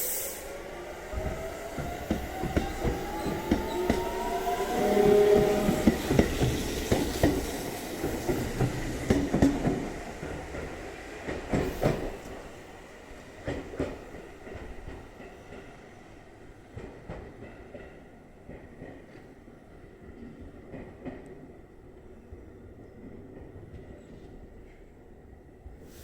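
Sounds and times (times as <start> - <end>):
electric train pulling away: 0.0 - 12.3
train wheels clacking: 1.0 - 12.4.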